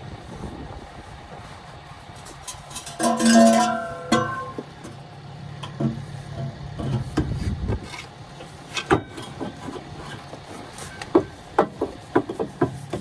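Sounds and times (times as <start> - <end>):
hand tools knocking and clinking: 2.4 - 5.0.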